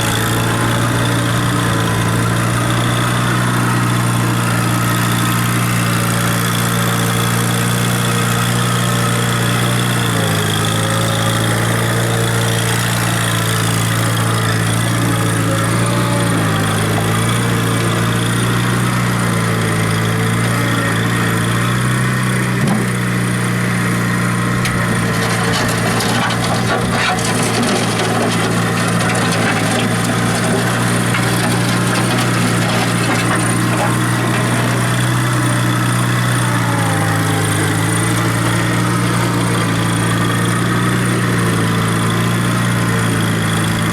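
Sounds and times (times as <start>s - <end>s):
skid steer engine running: 0.0s - 43.9s
clicks and rattles: 24.6s - 35.9s.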